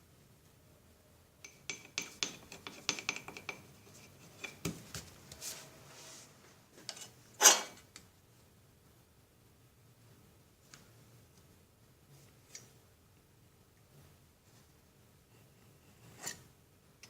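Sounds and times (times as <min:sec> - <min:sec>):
metal scrape: 0:05.4 - 0:07.8, 0:15.4 - 0:16.5.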